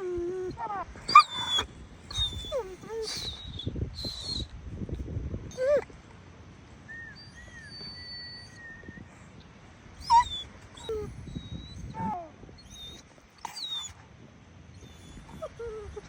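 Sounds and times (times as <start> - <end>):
dog whining and yelping: 0.0 - 4.5, 5.5 - 5.9, 7.1 - 8.8, 10.0 - 14.0, 14.7 - 16.0.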